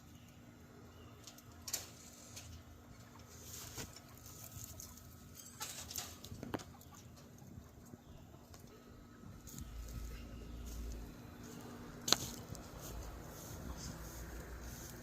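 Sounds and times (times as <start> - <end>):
rustling: 9.4 - 15.0.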